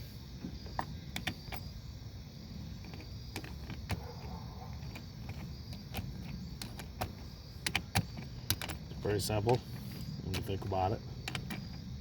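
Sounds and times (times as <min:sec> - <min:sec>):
hand tools clicking on metal: 0:02.8 - 0:09.6.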